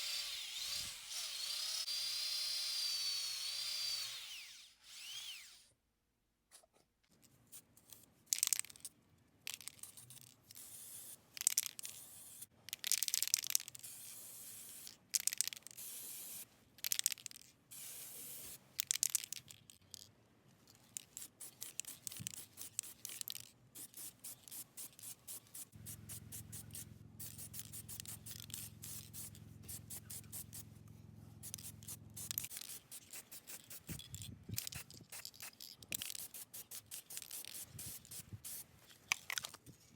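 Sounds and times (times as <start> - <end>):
faint low hum: 25.8 - 32.4.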